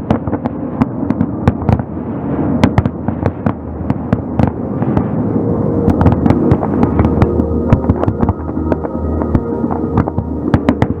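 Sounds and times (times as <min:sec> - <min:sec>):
fireworks bangs and crackles: 0:00.0 - 0:05.2
steady low hum: 0:00.6 - 0:11.0
sustained tones: 0:03.6 - 0:11.0.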